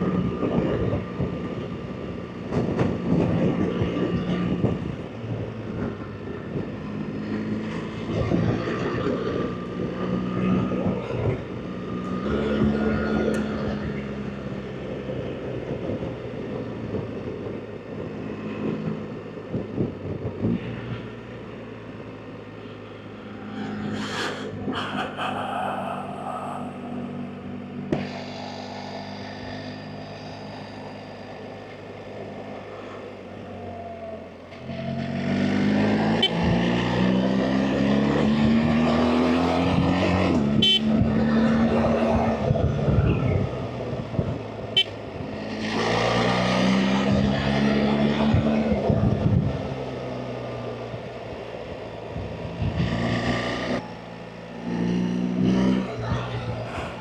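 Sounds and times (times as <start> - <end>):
motorcycle engine accelerating: 26.6 - 57.0
wind noise: 41.0 - 45.3.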